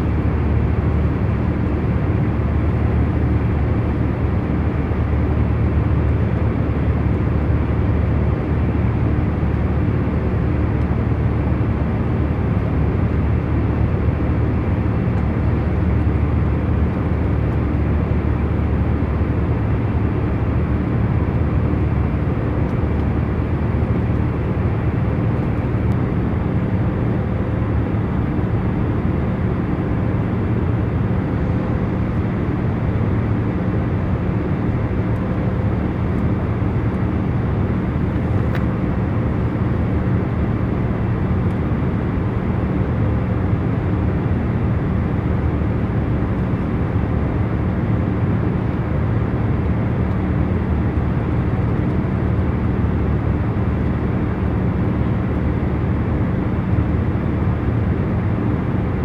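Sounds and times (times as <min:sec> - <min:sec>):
faint constant hum: 0:00.0 - 0:59.0
airliner cabin rumble: 0:19.1 - 0:56.4.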